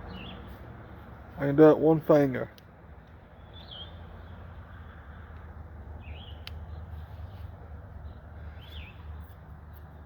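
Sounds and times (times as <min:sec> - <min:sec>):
bird chirping: 0:00.0 - 0:00.5, 0:03.4 - 0:05.4, 0:06.0 - 0:09.4.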